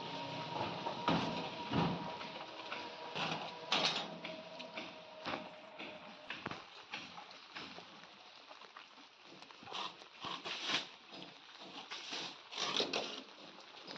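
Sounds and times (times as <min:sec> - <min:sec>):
cow munching feed: 0:00.1 - 0:13.9.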